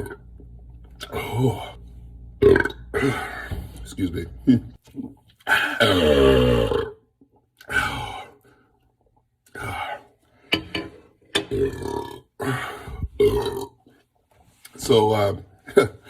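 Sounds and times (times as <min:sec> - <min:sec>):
man belching: 0:02.4 - 0:03.6, 0:05.5 - 0:07.9, 0:11.4 - 0:13.8.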